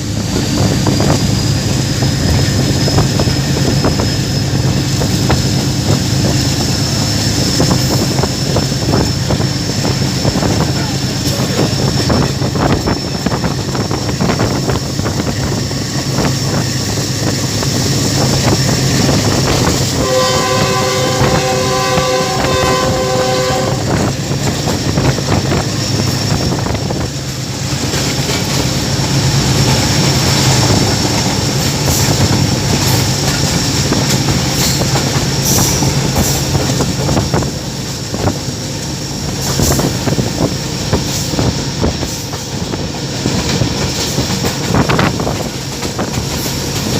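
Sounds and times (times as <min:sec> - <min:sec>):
locomotive engine drone: 0:00.0 - 0:46.9
wheels rumbling on rails: 0:00.0 - 0:46.9
locomotive horn: 0:19.9 - 0:24.1
wheels clicking over rail joints: 0:42.0 - 0:46.9.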